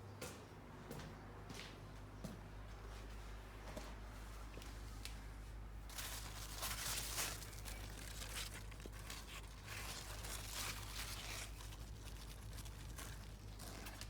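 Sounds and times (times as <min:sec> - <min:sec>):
rustling and crinkling: 0:02.9 - 0:14.0.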